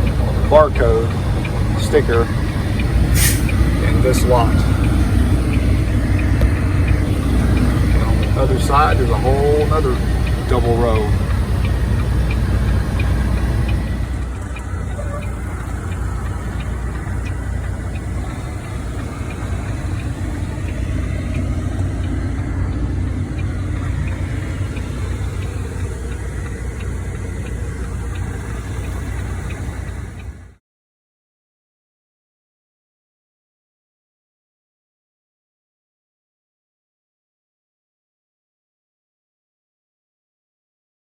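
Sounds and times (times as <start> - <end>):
faint regular ticking: 0.0 - 30.6
truck engine rumbling: 0.0 - 30.6.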